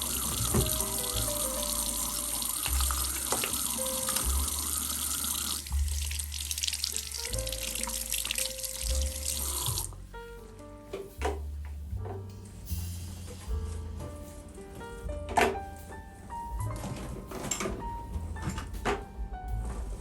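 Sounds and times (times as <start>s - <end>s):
tap water running into sink: 0.0s - 10.0s
soft background music: 0.0s - 20.0s.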